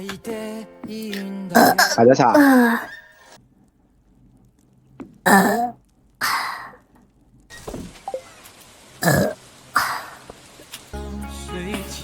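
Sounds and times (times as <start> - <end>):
woman burping: 1.5 - 3.0, 5.2 - 6.8, 9.0 - 10.0.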